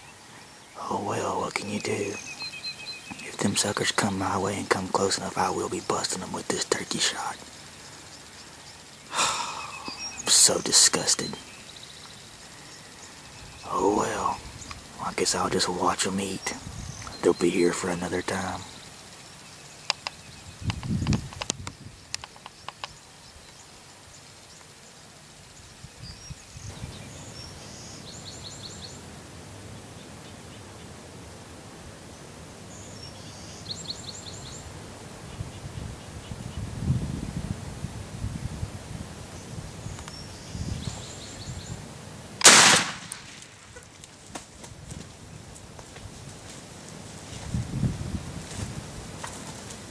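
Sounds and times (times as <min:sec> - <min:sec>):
small bird calling: 0:00.0 - 0:24.9
sharp clicks: 0:19.9 - 0:23.0
shotgun blast: 0:42.4 - 0:43.6.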